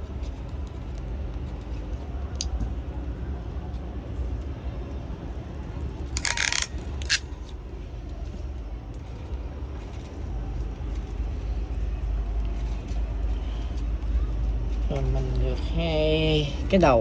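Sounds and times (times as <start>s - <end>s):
crimping tool crunching: 6.2s - 7.2s
crimping tool snapping: 6.2s - 7.2s.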